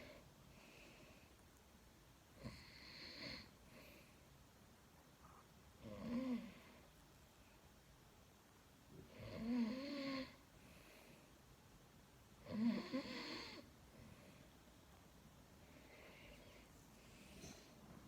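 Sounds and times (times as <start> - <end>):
man snoring: 12.5 - 13.6.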